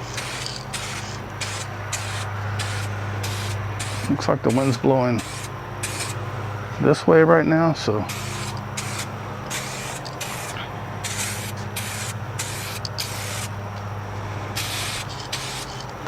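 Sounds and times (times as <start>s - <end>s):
aerosol can spraying: 0.0s - 6.2s, 8.0s - 13.6s, 14.5s - 16.0s.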